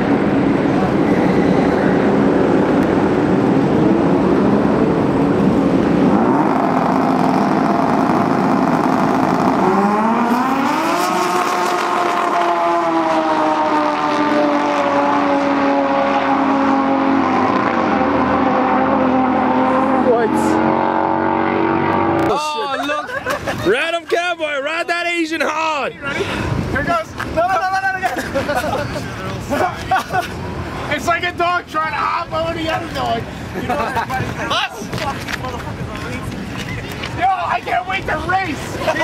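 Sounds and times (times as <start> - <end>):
snowmobile engine at high revs: 5.9 - 22.3.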